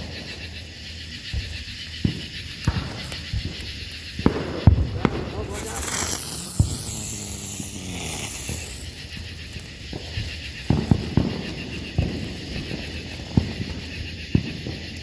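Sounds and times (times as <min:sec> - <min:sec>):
sparkler fizzing hiss: 0:05.1 - 0:09.1
sharp crackling pops: 0:05.3 - 0:09.0.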